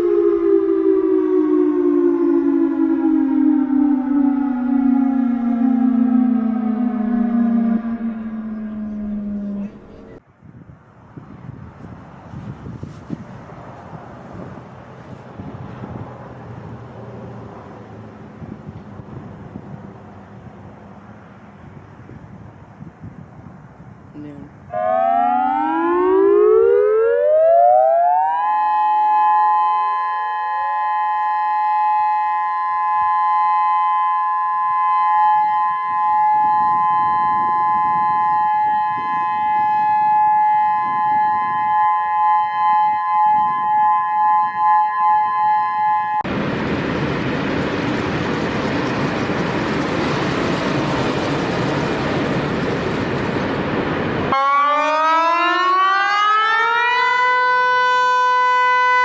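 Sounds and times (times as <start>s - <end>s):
tornado siren wailing: 0.0s - 10.2s, 24.2s - 59.0s
loud rushing noise: 46.3s - 54.4s.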